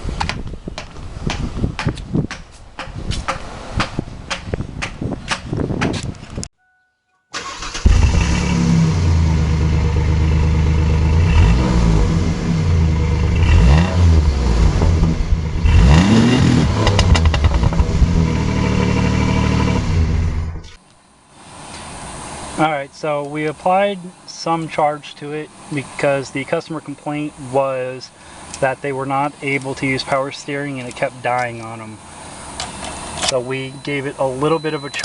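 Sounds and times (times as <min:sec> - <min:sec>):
car engine starting and revving: 0:07.4 - 0:20.8.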